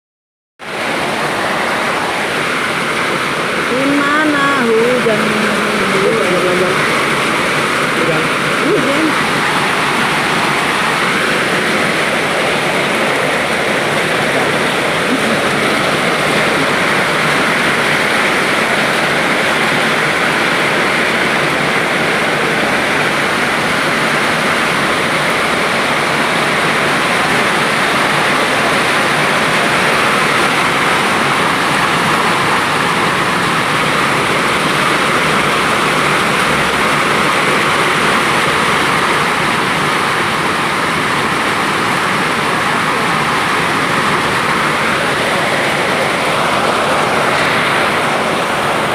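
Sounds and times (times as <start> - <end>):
heavy rain falling: 0.6 - 48.9.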